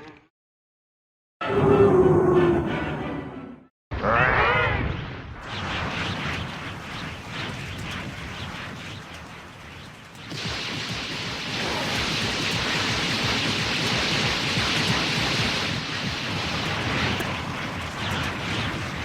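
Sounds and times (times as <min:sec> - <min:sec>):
dense rushing noise: 0:05.4 - 0:19.0.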